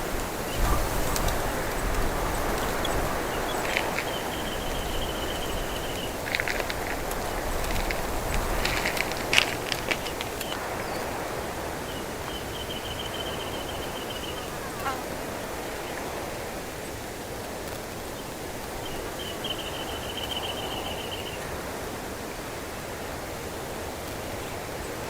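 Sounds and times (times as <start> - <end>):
wind blowing through bush: 0.0 - 25.0
songbird trilling: 1.6 - 6.2, 11.8 - 15.0.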